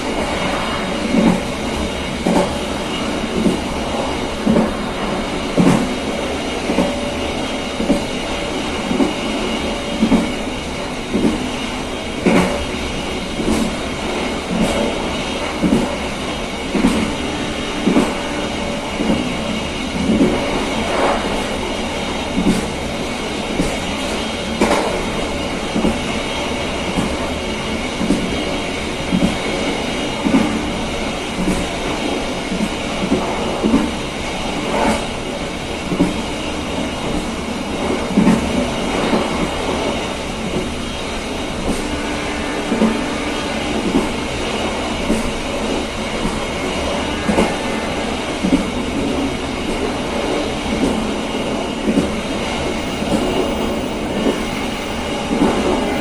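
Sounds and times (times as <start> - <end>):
train rumble and hiss: 0.0 - 56.0
faint high whine: 52.7 - 56.0.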